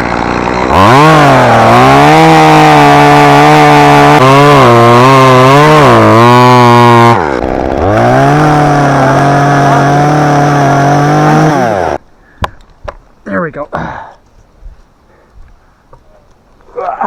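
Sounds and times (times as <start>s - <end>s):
chainsaw cutting wood: 0.0s - 12.0s.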